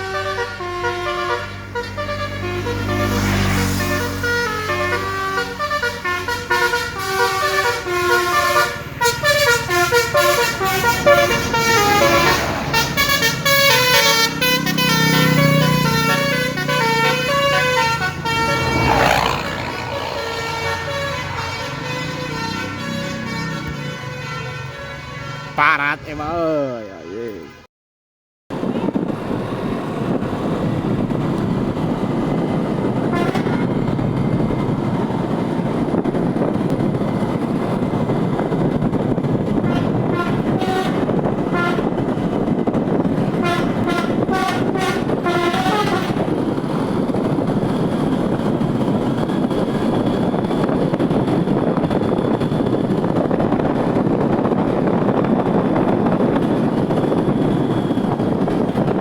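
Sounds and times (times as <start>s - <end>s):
musical bus air horn: 0.0s - 19.1s, 19.9s - 25.8s, 33.0s - 33.8s, 39.5s - 42.5s, 43.2s - 46.6s
bus running noise: 0.0s - 27.6s, 28.5s - 59.0s.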